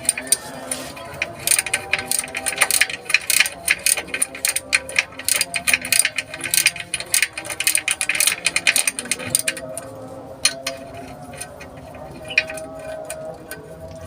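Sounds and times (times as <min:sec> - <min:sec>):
ratchet wrench clicking: 0:00.0 - 0:13.2.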